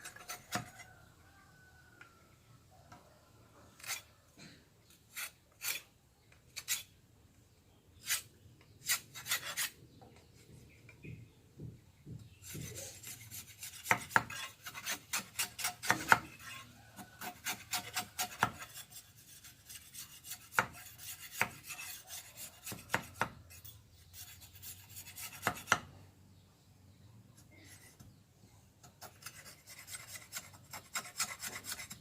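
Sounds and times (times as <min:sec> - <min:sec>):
hand tool scraping bamboo: 0:00.0 - 0:01.0, 0:03.7 - 0:04.1, 0:04.9 - 0:07.0, 0:08.0 - 0:09.8, 0:12.4 - 0:25.8, 0:28.8 - 0:32.0.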